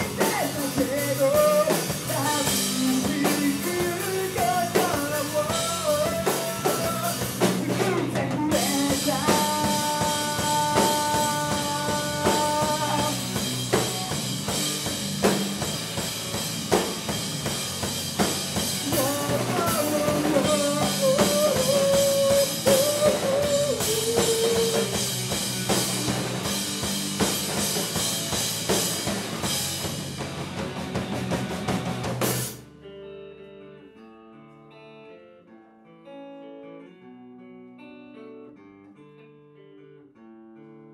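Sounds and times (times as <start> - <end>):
rock band playing live: 0.0 - 35.0.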